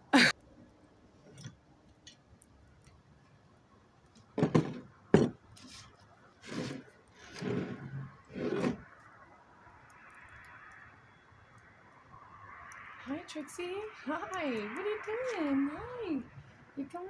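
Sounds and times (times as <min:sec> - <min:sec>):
wood knocks: 0:04.4 - 0:05.4
wood sliding against wood: 0:04.4 - 0:08.8.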